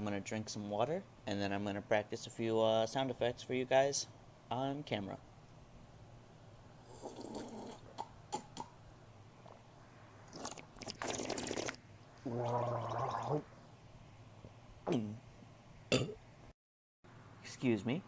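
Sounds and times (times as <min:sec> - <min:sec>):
man gargling water: 0:06.9 - 0:08.7, 0:10.4 - 0:13.5
man sipping and swallowing: 0:06.9 - 0:08.7, 0:09.4 - 0:09.7, 0:10.3 - 0:13.5.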